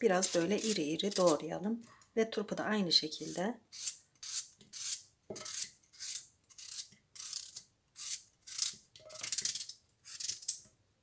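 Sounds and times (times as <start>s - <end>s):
knife slicing radish: 0.1s - 1.4s, 3.2s - 10.6s.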